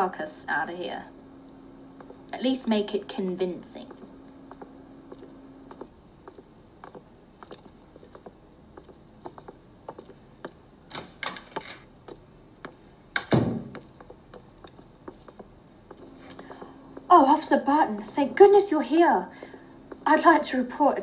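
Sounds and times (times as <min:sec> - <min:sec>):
small clicks and knocks: 0:03.9 - 0:16.7
loud heavy thump: 0:13.3 - 0:13.8.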